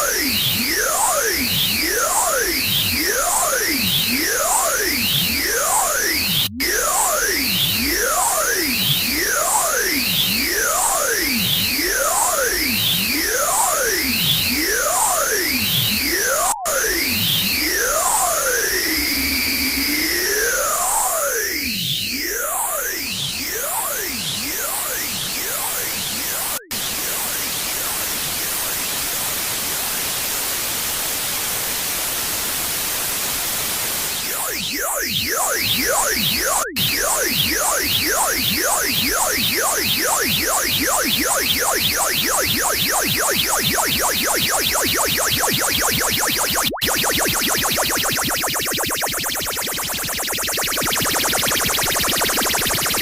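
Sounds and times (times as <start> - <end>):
electronic tones sweeping: 43.8 - 53.0.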